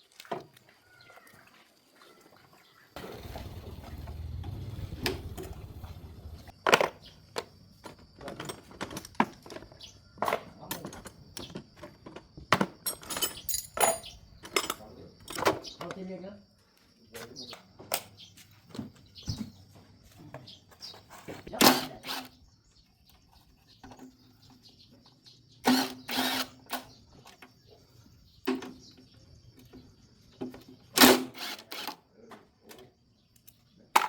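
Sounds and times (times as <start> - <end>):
metal tools clanking: 7.9 - 15.9.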